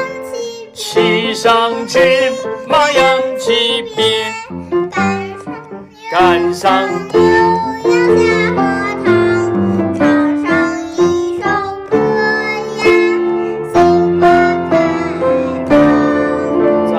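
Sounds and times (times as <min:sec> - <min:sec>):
child singing: 0:00.0 - 0:16.9
piano chords: 0:00.0 - 0:16.9.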